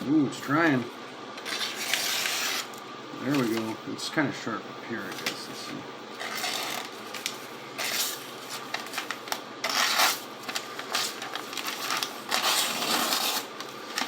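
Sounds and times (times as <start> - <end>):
knife dragging through paper: 1.4 - 3.8, 7.8 - 9.0, 9.6 - 14.0.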